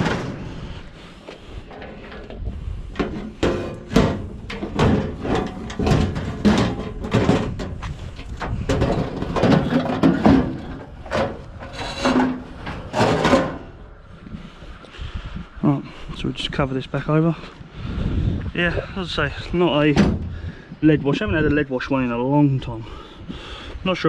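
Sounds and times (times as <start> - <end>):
scrap metal clanking: 1.1 - 13.8.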